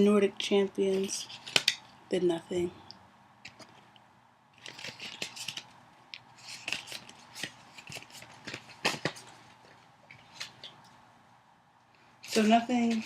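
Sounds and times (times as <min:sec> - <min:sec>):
cards clicking: 0:04.6 - 0:09.4.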